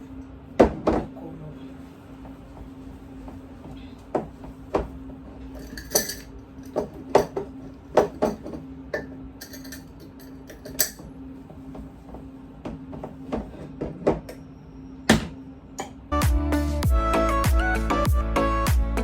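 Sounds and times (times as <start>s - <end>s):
dishes and utensils clinking: 5.5s - 11.1s.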